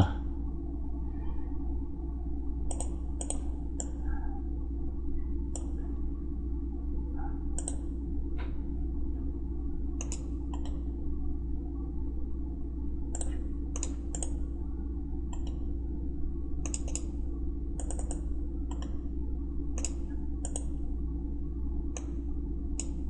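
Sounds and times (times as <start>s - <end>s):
steady low hum: 0.0s - 23.0s
computer mouse clicking: 2.7s - 4.0s, 7.6s - 7.9s, 10.0s - 10.8s, 13.1s - 14.4s, 15.3s - 15.6s, 16.6s - 17.2s, 17.8s - 19.0s, 19.8s - 20.8s, 22.8s - 23.0s.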